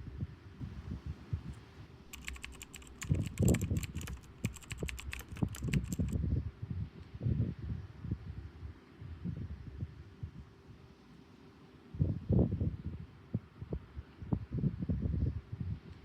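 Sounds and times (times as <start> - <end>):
sharp typing-like clicks: 2.1 - 6.2.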